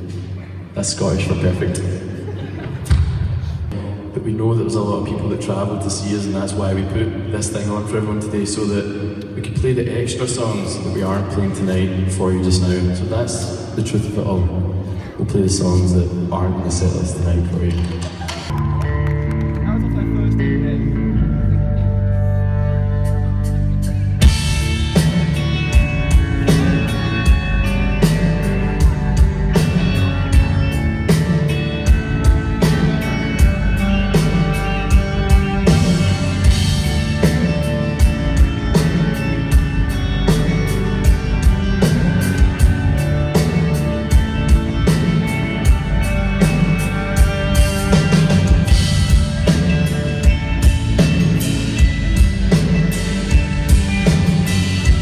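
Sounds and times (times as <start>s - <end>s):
guitar: 0.0s - 55.0s
rock music: 0.0s - 55.0s
drum kit beat: 23.8s - 55.0s.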